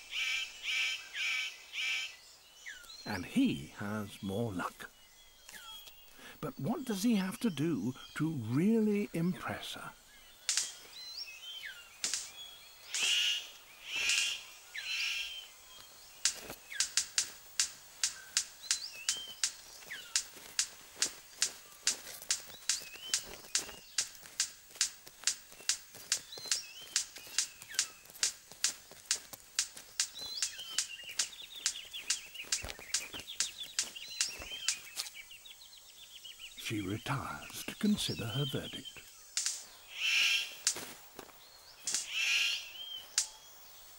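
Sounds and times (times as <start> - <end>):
buzzy hissing bird calls: 0.0 - 43.8
bird sharp clicks: 10.2 - 35.2, 39.0 - 43.4.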